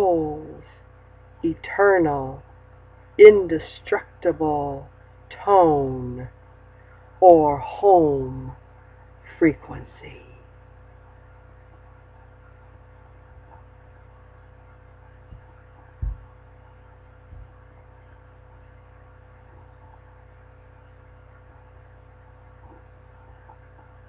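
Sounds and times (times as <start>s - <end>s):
low electrical hum: 0.0s - 24.0s
dull low thumps: 15.2s - 16.5s, 17.2s - 17.7s.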